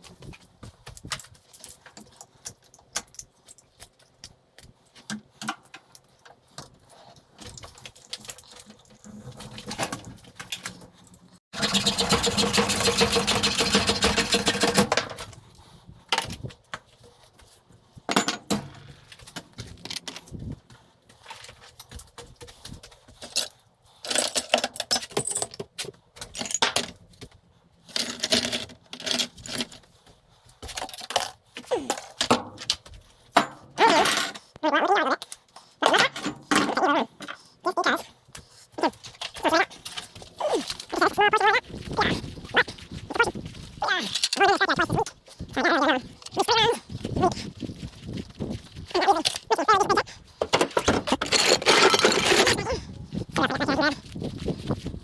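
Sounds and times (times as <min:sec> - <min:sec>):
scrap metal clinking and rattling: 0:07.0 - 0:15.4, 0:23.2 - 0:27.1, 0:27.8 - 0:29.9, 0:46.2 - 0:53.7.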